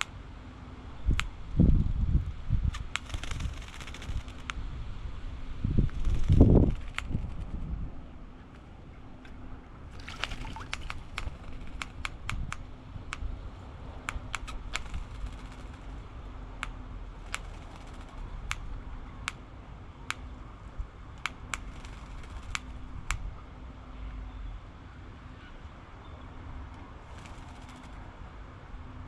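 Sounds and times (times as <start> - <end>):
splashing or wing flutter: 2.8 - 4.5, 5.9 - 7.7, 9.9 - 12.1, 14.7 - 15.9, 17.2 - 18.3, 21.6 - 22.7, 27.1 - 28.0
sharp irregular clicks and taps: 10.6 - 13.3, 14.0 - 15.9, 16.6 - 19.4, 21.2 - 23.2.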